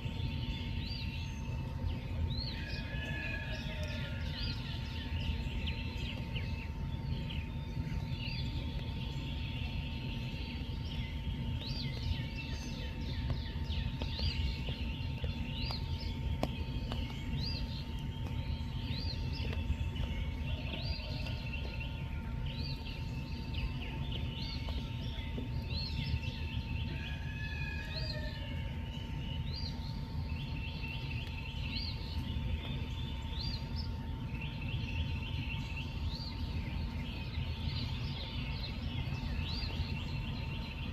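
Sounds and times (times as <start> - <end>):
faint steady hum: 0.0 - 40.9.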